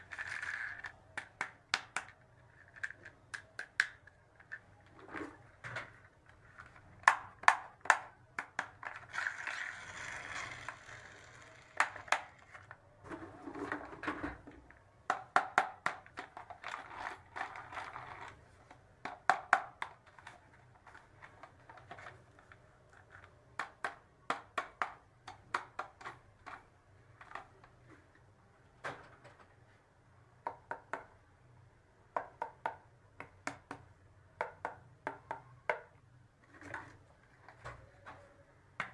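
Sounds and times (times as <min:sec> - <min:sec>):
plastic toy pieces clicking: 0:00.0 - 0:04.6, 0:07.0 - 0:12.6.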